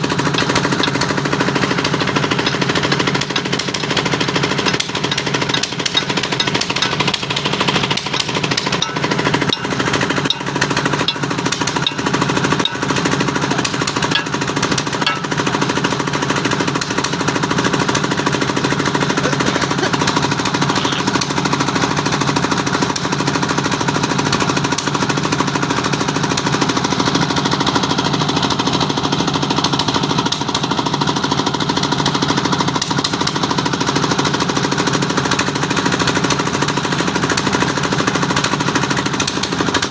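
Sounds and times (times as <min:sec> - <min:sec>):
machinery engine hum: 0:00.0 - 0:22.0
fast hammering rattle: 0:00.0 - 0:39.9.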